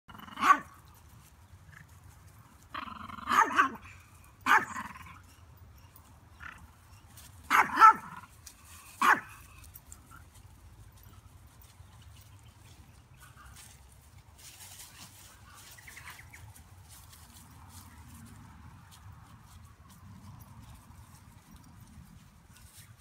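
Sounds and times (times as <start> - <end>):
dog barking: 0.4 - 0.7, 3.3 - 4.8, 7.5 - 8.2, 9.0 - 9.4.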